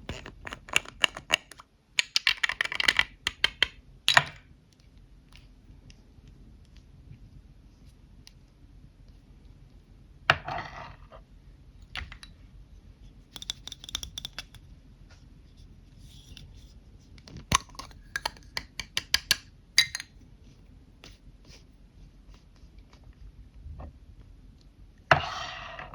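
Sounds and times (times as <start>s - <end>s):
lipstick tubes clicking: 13.4s - 14.6s, 17.6s - 20.1s.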